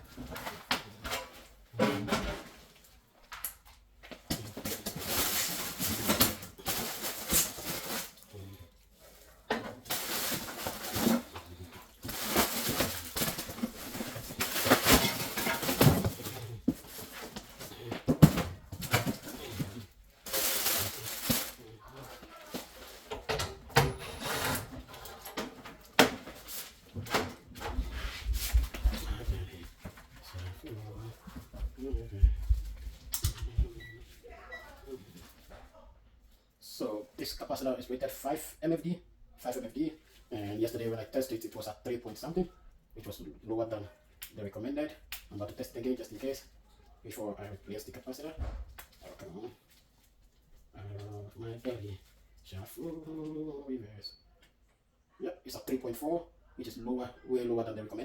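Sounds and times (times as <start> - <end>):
metal parts and tools clattering: 9.5 - 21.6.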